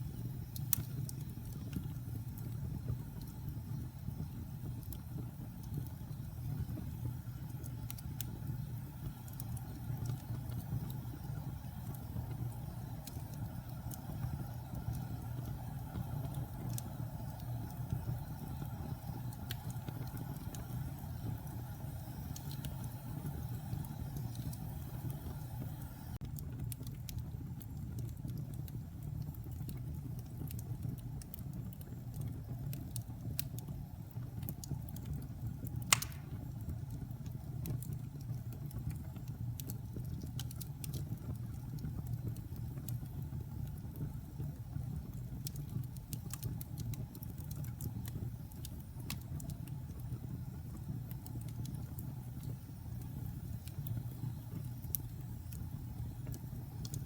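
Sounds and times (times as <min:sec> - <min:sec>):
fire crackling: 0:00.0 - 0:57.0
fire flames rumbling: 0:00.0 - 0:57.0
sharp loud pop: 0:35.9 - 0:36.4.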